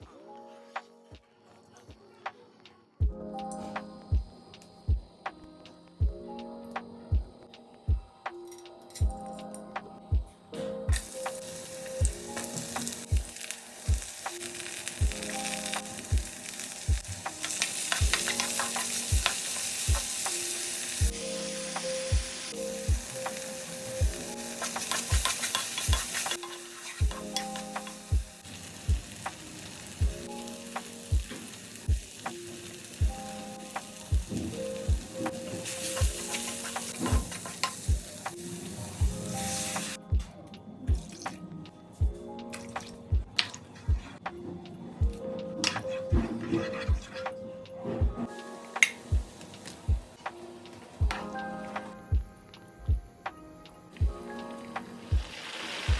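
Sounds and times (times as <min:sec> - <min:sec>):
background music with beat: 0:03.0 - 0:38.4, 0:39.0 - 0:55.9
food sizzling in oil: 0:10.9 - 0:40.0, 0:54.8 - 0:55.9.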